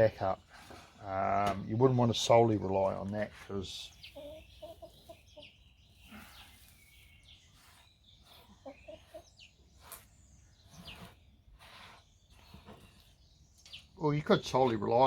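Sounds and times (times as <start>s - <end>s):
faint bird chirps: 3.8s - 14.1s.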